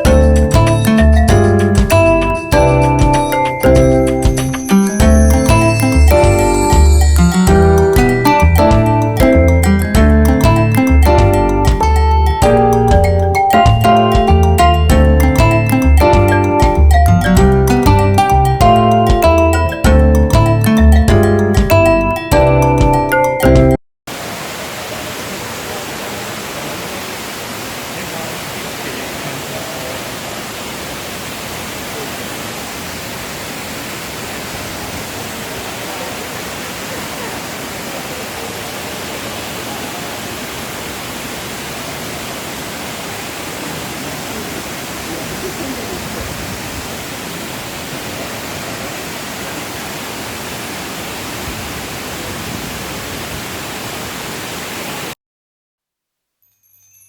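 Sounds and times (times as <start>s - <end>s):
waterfall rushing: 0.0s - 10.6s, 24.1s - 55.2s.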